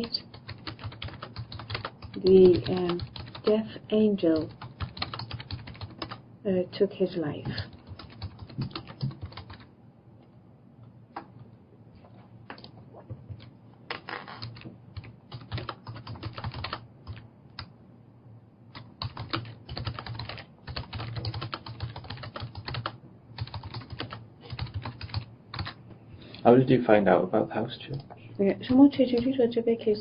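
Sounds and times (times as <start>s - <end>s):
typing on keyboard: 0.0s - 3.6s, 4.3s - 6.2s, 7.4s - 9.7s, 13.3s - 17.7s, 18.7s - 25.8s.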